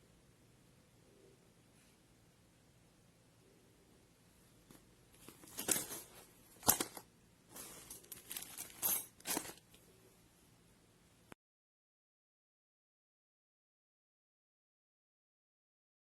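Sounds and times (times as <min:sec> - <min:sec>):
rustling and clicking: 0:04.7 - 0:09.9.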